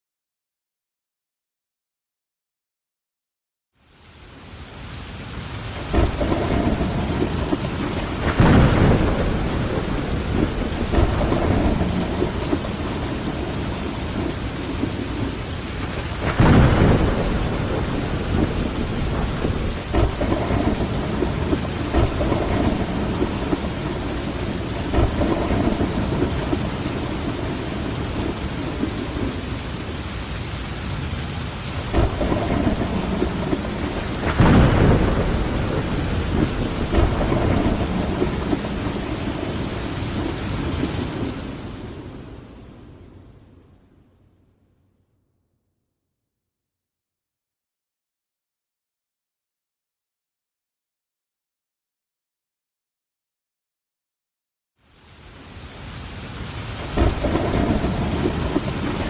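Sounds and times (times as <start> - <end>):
steady rain: 3.8 - 44.8, 54.8 - 59.0
thunder rumbling: 4.8 - 43.7, 55.1 - 59.0.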